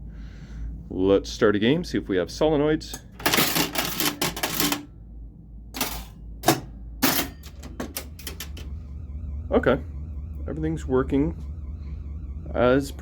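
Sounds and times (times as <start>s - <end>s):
low electrical hum: 0.0s - 13.0s
pinball solenoids and relays clacking: 2.9s - 4.9s, 5.8s - 8.7s.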